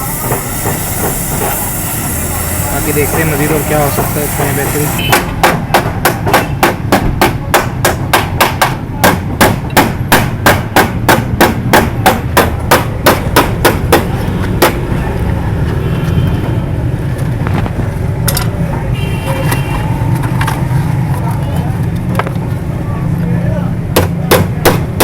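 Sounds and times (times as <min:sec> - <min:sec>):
hammer beating sheet metal: 0:00.0 - 0:14.9, 0:23.9 - 0:25.0.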